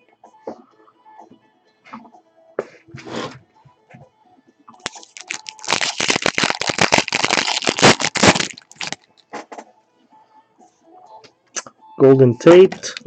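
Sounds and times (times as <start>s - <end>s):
wrapper tearing and crinkling: 4.8s - 9.2s.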